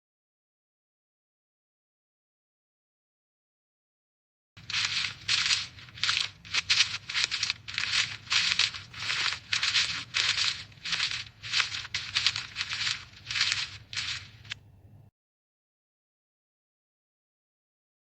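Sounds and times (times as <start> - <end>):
footsteps crunching dry leaves: 4.6 - 14.6.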